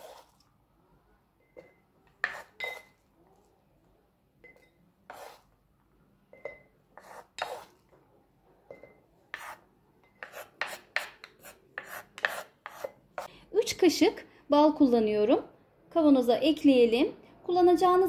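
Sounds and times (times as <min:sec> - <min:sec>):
spoon scraping into a jar: 0:00.0 - 0:00.4, 0:02.2 - 0:03.0, 0:04.4 - 0:05.4, 0:06.4 - 0:07.8.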